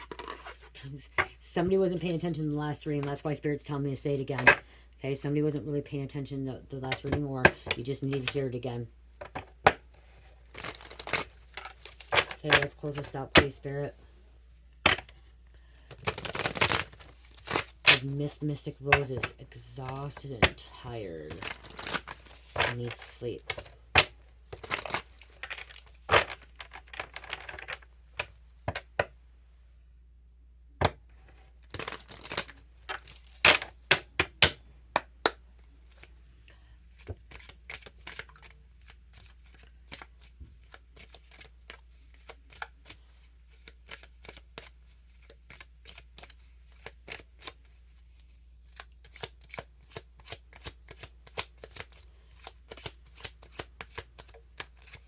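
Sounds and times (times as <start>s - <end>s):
cards being shuffled: 6.9s - 8.6s, 9.2s - 13.8s, 15.7s - 29.1s, 31.1s - 36.2s, 36.9s - 55.0s.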